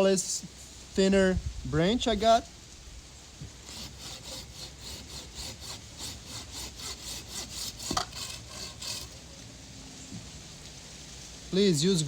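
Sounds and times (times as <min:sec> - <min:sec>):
saw rasping through wood: 0:03.6 - 0:09.2.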